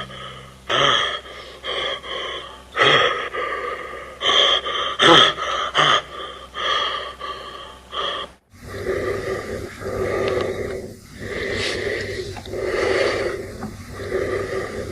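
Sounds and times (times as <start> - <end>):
heavy hissing breathing: 0.0 - 14.9.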